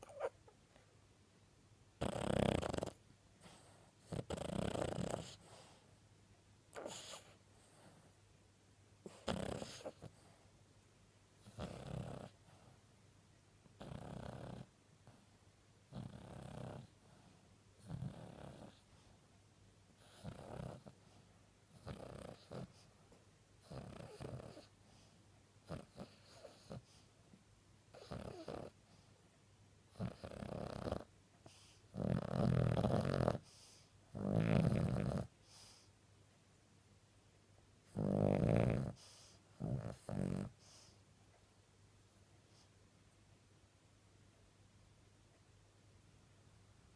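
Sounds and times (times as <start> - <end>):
dog snoring: 0.0 - 0.3, 2.0 - 5.8, 6.7 - 8.2, 9.0 - 10.4, 11.4 - 12.8, 13.8 - 15.3, 15.9 - 19.1, 20.0 - 22.9, 23.6 - 27.0, 27.9 - 29.0, 29.9 - 35.9, 37.9 - 41.0.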